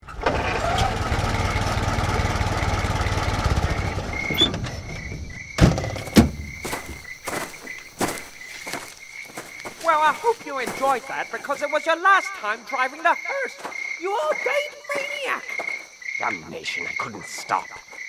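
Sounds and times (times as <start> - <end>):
car engine running: 0.1 - 6.6
crickets chirping: 0.9 - 18.0.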